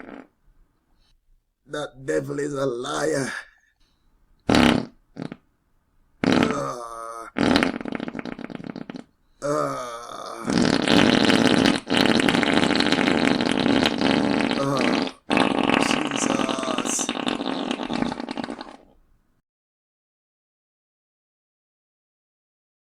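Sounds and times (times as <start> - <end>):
farts: 0.0 - 0.3, 4.5 - 5.4, 6.2 - 9.2, 10.0 - 19.0.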